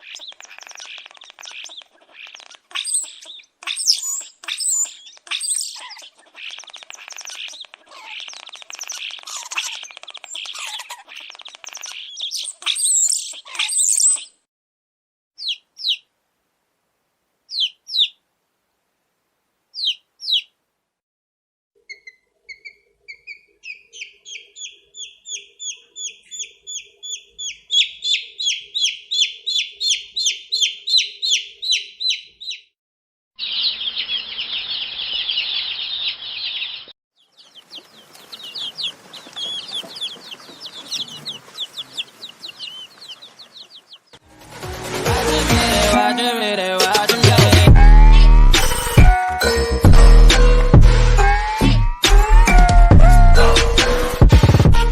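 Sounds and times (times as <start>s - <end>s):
chicks peeping: 0.0s - 14.3s, 15.4s - 16.0s, 17.5s - 18.2s, 19.8s - 20.5s, 21.9s - 32.6s, 33.4s - 44.2s
background hiss: 15.6s - 21.0s.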